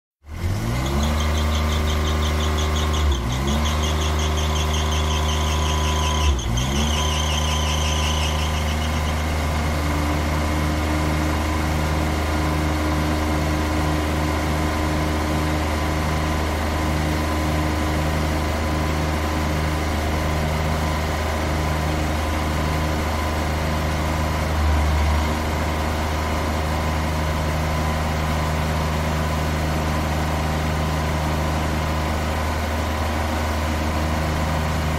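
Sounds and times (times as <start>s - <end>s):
wheels squealing: 0.4s - 9.8s
truck engine humming: 0.4s - 34.9s.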